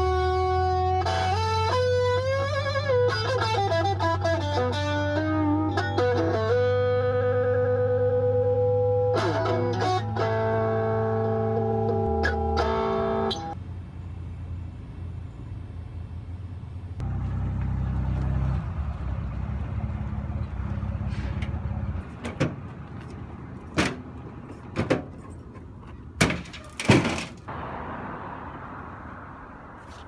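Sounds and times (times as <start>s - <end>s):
vehicle engine running: 0.0s - 24.6s
sharp bangs and clanks: 23.6s - 28.3s.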